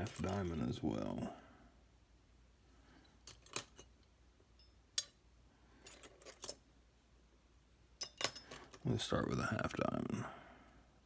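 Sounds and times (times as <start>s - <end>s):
lock-picking tools clinking: 3.3s - 4.0s, 4.6s - 5.2s, 5.8s - 6.6s, 8.0s - 8.8s.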